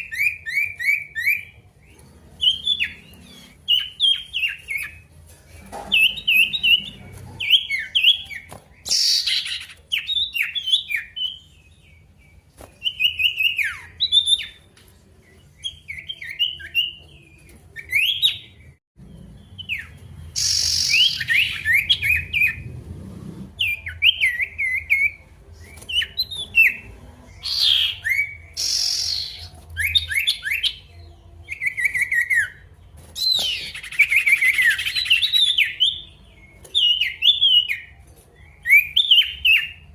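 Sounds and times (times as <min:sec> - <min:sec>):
songbird chirping: 0:00.0 - 0:39.9
harsh noisy bird notes: 0:15.5 - 0:39.9.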